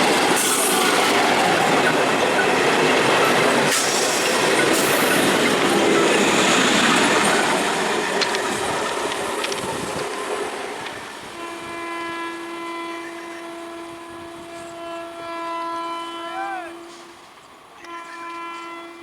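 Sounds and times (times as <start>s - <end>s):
train running on rails: 0.0s - 19.0s
train horn blast: 11.2s - 19.0s.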